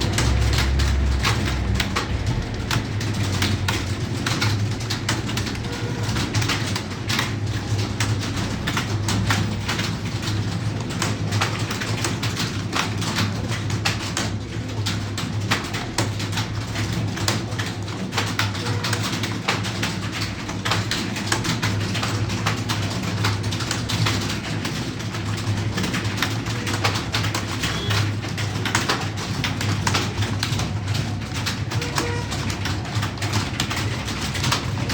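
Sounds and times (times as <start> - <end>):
fast keyboard typing: 0.0 - 34.9.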